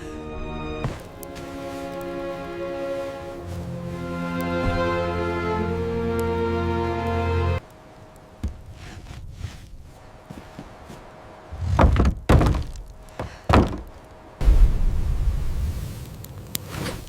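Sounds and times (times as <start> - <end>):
background music: 0.0 - 7.6
heavy thuds on wooden door: 11.6 - 13.9
loud low rumble: 14.4 - 15.7.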